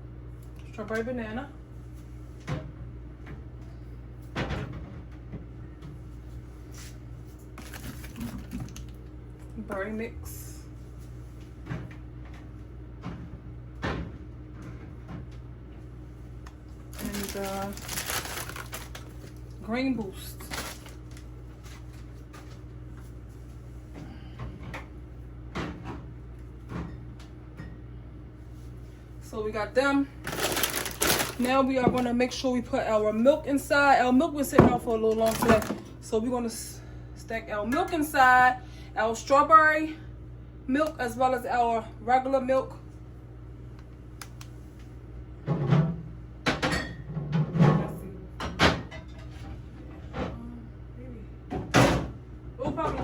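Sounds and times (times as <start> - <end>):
steady low hum: 0.0 - 47.1
plastic bottles knocking: 30.3 - 32.1, 34.6 - 35.8
bottles knocking on shelves: 34.6 - 35.8.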